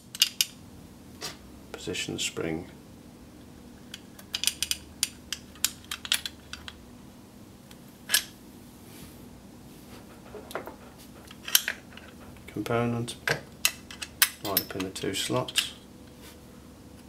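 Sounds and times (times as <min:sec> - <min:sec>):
small metal parts clicking: 0:03.9 - 0:06.8.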